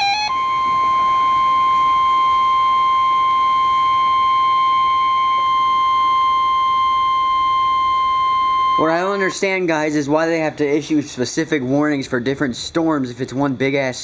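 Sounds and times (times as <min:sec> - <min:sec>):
high steady alarm tone: 0:00.0 - 0:09.7.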